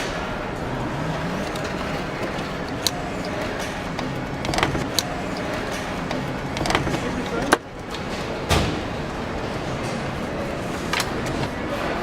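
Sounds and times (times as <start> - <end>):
factory machinery din: 0.0 - 12.0
sharp metallic clicks: 1.4 - 7.2.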